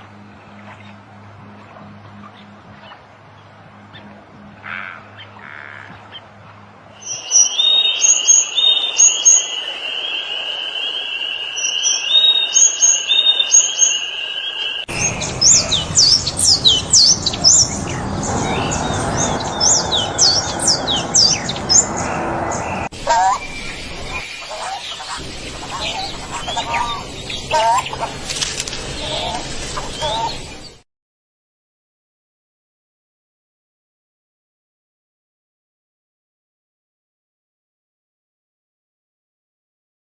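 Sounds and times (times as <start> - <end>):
bird trilling: 7.0 - 30.6.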